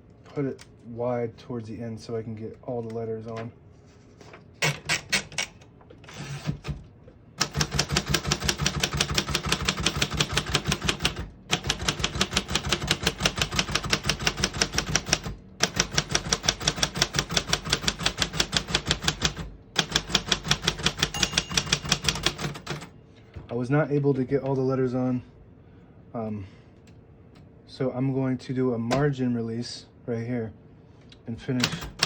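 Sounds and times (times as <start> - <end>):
manual typewriter typing: 7.4 - 22.9, 31.6 - 32.0
typewriter margin bell: 19.9 - 22.8.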